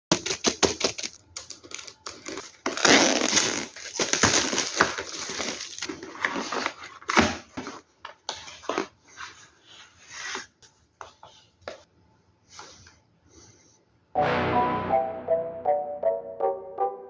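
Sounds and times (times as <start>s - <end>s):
packaging crinkling and rustling: 0.1s - 9.4s.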